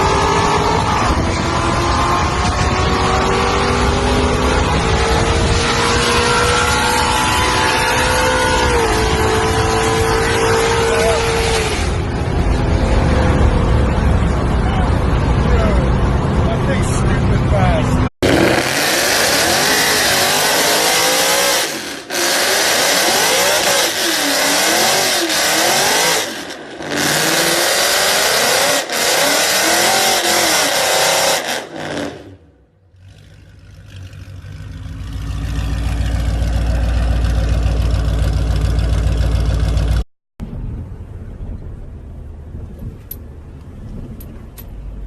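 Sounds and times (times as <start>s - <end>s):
car engine revving: 0.0s - 40.0s
deep engine rumble: 32.6s - 45.0s.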